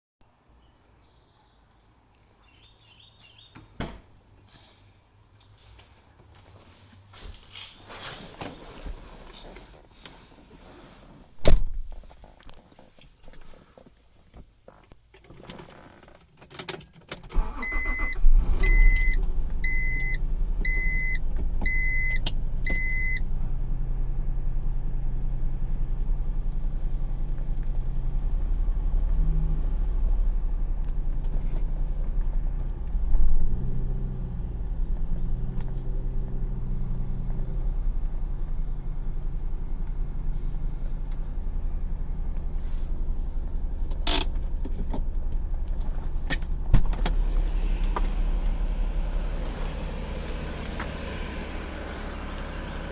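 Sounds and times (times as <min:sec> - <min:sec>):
loud thump: 0:11.4 - 0:11.9
car engine starting and idling: 0:17.1 - 0:52.9.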